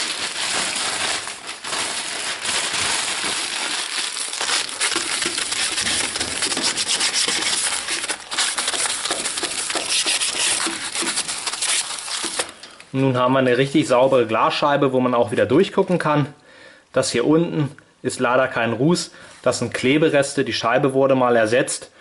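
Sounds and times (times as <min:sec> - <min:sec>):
newspaper rubbing on glass: 0:04.5 - 0:12.4.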